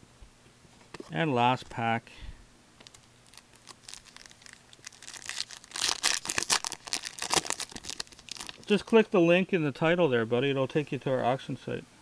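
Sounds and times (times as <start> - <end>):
wrapper tearing and crinkling: 2.8 - 9.0.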